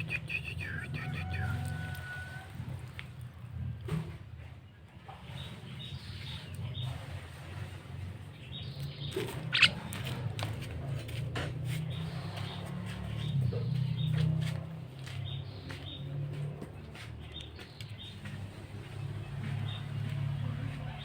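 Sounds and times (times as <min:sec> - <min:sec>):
bird calls and clicks: 0:00.0 - 0:03.2, 0:08.6 - 0:10.9, 0:11.8 - 0:20.0.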